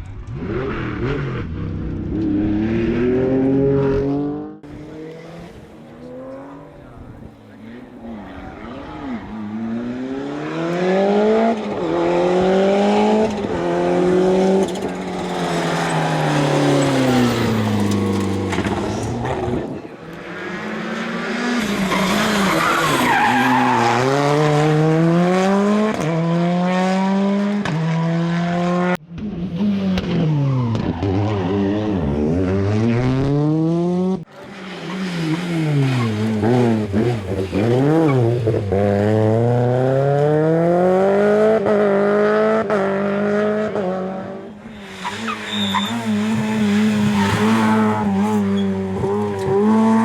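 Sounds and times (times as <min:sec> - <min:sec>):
rally car engines revving hard: 0:00.2 - 0:50.0
tyres squealing: 0:44.6 - 0:50.0.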